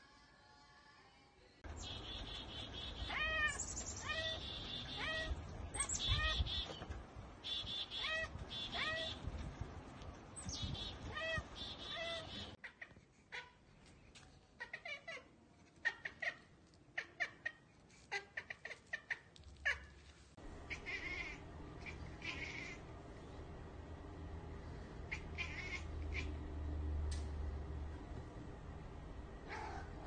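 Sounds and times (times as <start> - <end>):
cat chirping calls: 1.8 - 6.8, 7.4 - 9.3, 10.4 - 13.6, 14.6 - 20.0, 20.7 - 22.8, 25.1 - 26.4
cat chattering: 20.7 - 22.8, 25.1 - 26.4.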